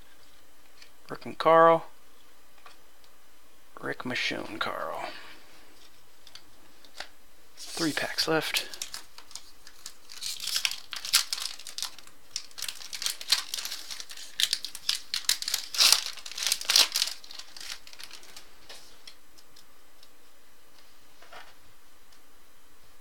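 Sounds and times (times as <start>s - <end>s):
card pack wrapper tearing and crinkling: 7.6s - 19.2s.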